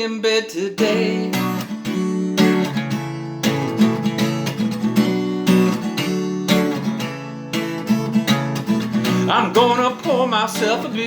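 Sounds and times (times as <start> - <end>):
person singing: 0.0 - 1.7, 9.1 - 11.0
acoustic guitar strumming: 0.0 - 11.0.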